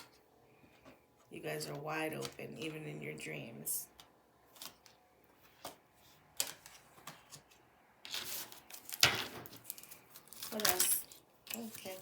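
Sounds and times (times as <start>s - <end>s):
cards shuffling: 6.4s - 12.0s.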